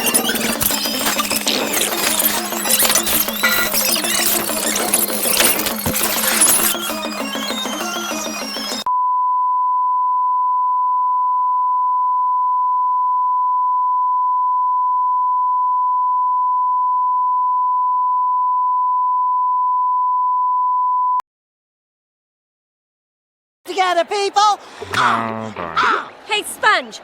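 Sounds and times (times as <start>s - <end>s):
sine test tone: 8.5s - 21.2s.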